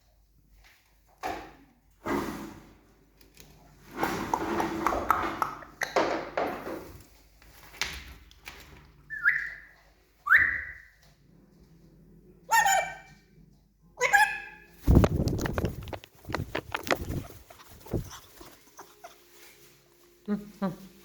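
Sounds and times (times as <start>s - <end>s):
parrot ringing call: 9.1s - 10.9s, 12.5s - 13.1s
parrot whistled chirps: 9.1s - 11.0s, 12.5s - 13.1s, 14.0s - 14.7s
parrot rough noisy sounds: 12.5s - 13.1s.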